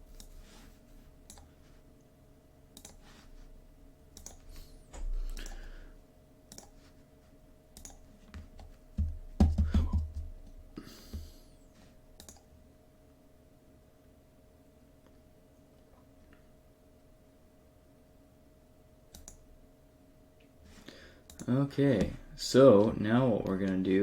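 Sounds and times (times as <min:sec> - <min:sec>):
computer mouse clicks: 0:00.1 - 0:00.4, 0:01.2 - 0:01.5, 0:02.8 - 0:03.0, 0:04.1 - 0:04.5, 0:05.3 - 0:05.7, 0:06.5 - 0:06.8, 0:07.8 - 0:08.7, 0:12.2 - 0:12.5, 0:19.1 - 0:19.4, 0:21.3 - 0:21.5.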